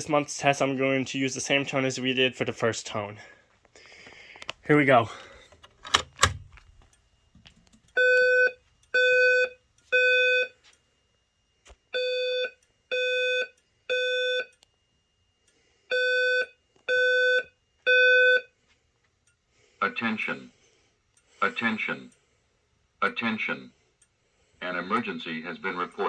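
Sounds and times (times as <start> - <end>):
fire alarm beeps: 7.9 - 10.7, 11.9 - 18.6.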